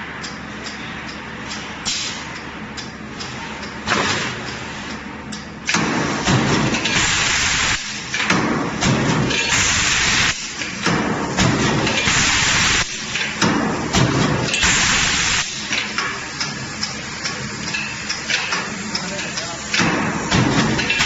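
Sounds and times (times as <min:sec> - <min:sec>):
machine rumbling and knocks: 0:05.7 - 0:07.2, 0:08.1 - 0:09.7, 0:10.8 - 0:12.2, 0:13.2 - 0:14.8, 0:19.7 - 0:21.0
air hiss: 0:14.6 - 0:15.8.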